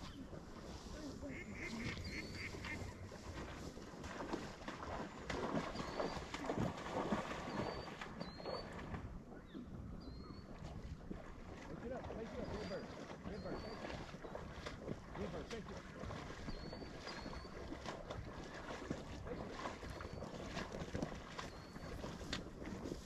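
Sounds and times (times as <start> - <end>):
ducks quacking: 0.9 - 3.4
geese honking: 1.2 - 3.2.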